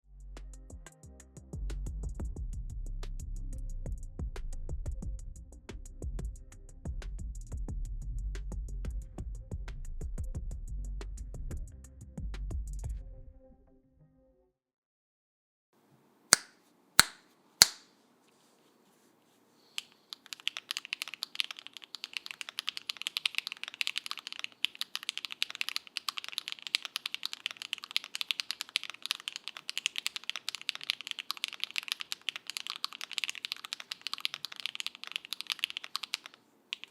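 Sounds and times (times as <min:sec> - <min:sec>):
sharp clicks: 0:16.4 - 0:17.9
fast typing on mechanical keyboard: 0:19.8 - 0:36.9.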